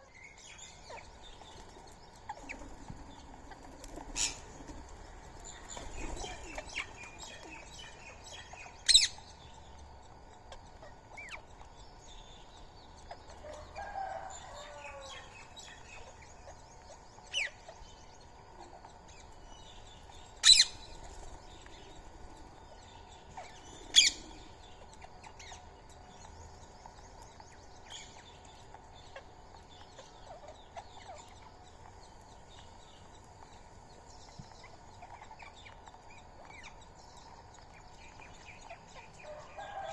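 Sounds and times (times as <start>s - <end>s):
faint chirping: 0.0s - 39.9s
parakeets shrieking: 20.4s - 20.9s, 23.4s - 24.3s.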